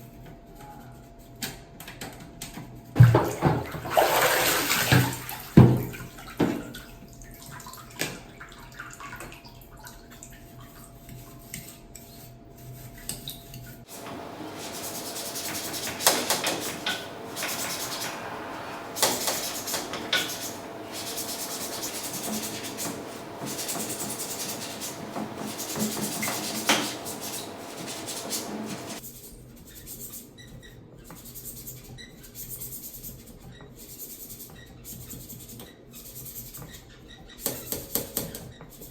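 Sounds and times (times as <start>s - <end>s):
tap water running and splashing: 3.0s - 10.5s, 13.9s - 29.0s.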